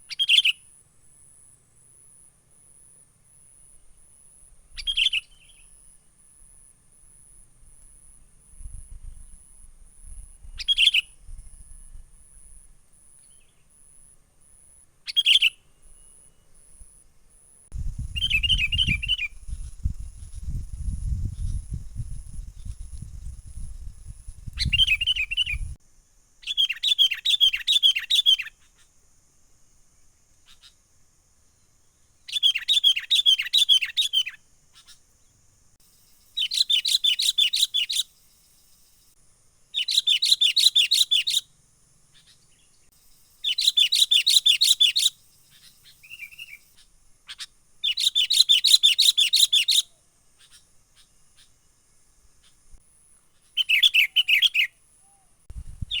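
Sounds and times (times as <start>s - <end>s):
bird chattering calls: 43.4s - 51.5s.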